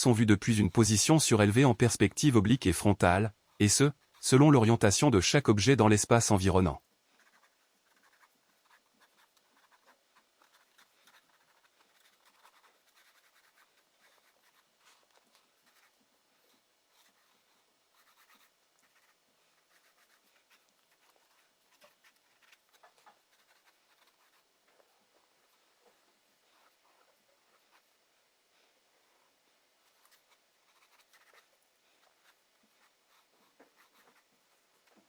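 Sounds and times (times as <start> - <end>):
drawing tool scratching paper: 7.2 - 16.0, 17.9 - 28.0, 29.9 - 35.0.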